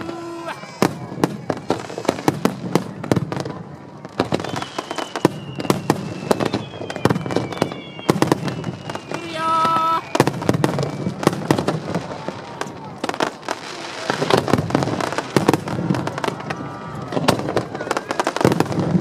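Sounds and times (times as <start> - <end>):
fireworks bangs and crackles: 0.0 - 19.0
falling whistles: 4.2 - 11.6.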